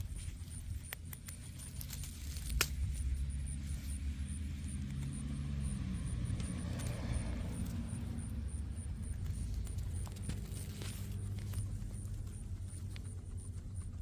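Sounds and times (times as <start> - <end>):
vehicle engine humming: 0.0 - 14.0
sharp clicks: 0.6 - 3.0.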